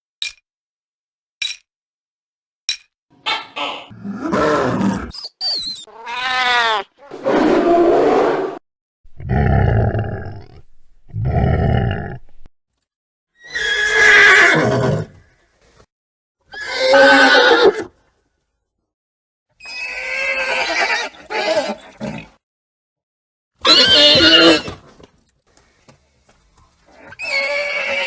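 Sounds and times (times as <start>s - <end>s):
horse neighing: 13.4s - 15.1s, 16.5s - 17.8s, 23.6s - 24.8s.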